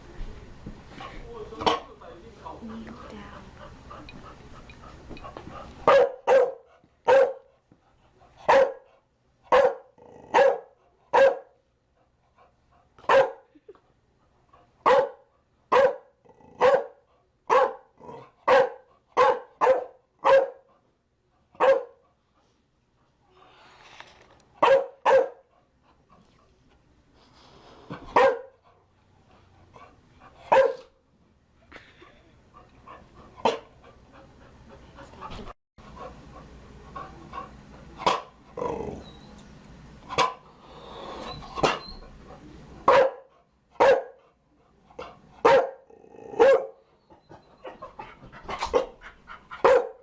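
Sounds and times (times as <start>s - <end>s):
dog barking: 5.9s - 7.5s, 8.5s - 8.9s, 9.5s - 11.6s, 13.1s - 13.4s, 14.8s - 17.9s, 18.5s - 20.7s, 21.6s - 22.0s, 24.6s - 25.4s, 28.1s - 28.6s, 30.5s - 30.9s, 38.0s - 38.3s, 40.2s - 40.4s, 42.9s - 44.2s, 45.4s - 45.8s, 46.4s - 46.8s, 49.6s - 50.0s.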